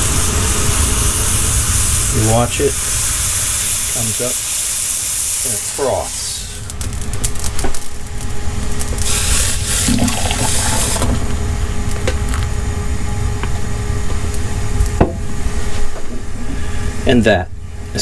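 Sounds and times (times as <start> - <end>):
rushing watery hiss: 0.0 - 6.7, 9.0 - 11.3
coffee pot boiling and bubbling: 0.0 - 15.1
steady low rumble: 0.0 - 18.0.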